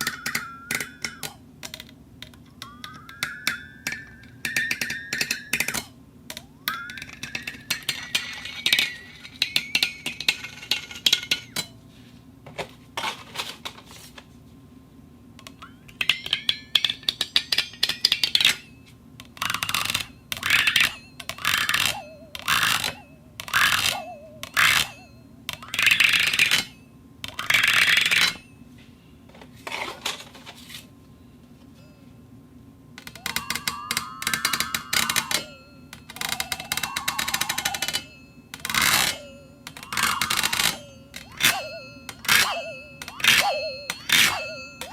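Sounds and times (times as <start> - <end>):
clinks: 0.0 - 11.8, 15.4 - 28.6, 33.0 - 44.9
high ringing tone: 2.5 - 5.7, 6.4 - 10.6, 18.4 - 29.0, 31.7 - 32.4, 33.0 - 44.9.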